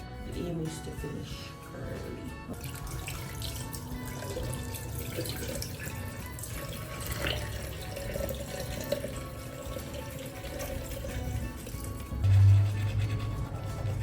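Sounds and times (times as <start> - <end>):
tap water running into sink: 2.5 - 12.1.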